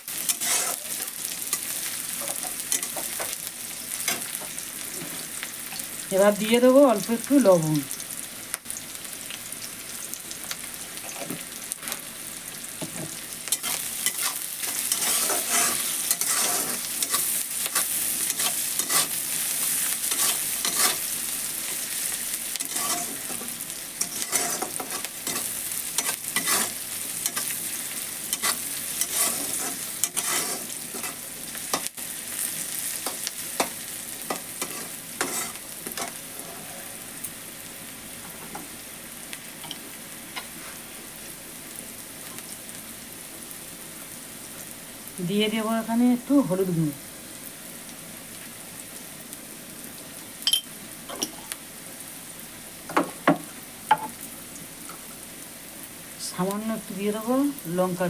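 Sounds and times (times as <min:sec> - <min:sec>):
onion sizzling in oil: 0:00.0 - 0:58.0
spatula scraping and knocking pan: 0:00.3 - 0:01.0, 0:12.8 - 0:21.1, 0:22.6 - 0:27.6, 0:28.3 - 0:31.9, 0:33.1 - 0:36.2.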